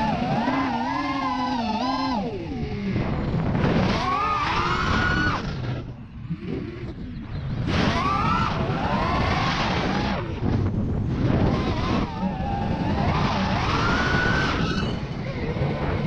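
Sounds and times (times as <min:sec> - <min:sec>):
quadcopter motors whining: 0:00.0 - 0:16.0.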